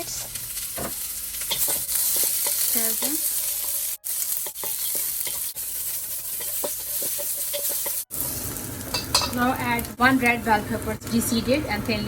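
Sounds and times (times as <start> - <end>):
vegetables sizzling in hot oil: 0.0 - 12.0.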